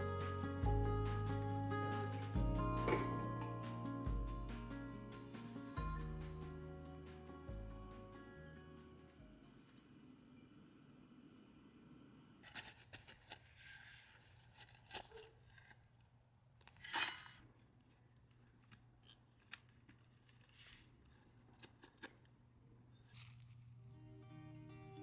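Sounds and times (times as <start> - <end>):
knife scraping and cutting: 16.7 - 17.5.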